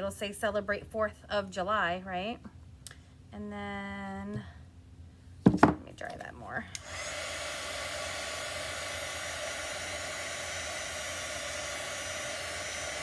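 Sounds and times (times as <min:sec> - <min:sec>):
hair dryer running: 0:06.7 - 0:13.0.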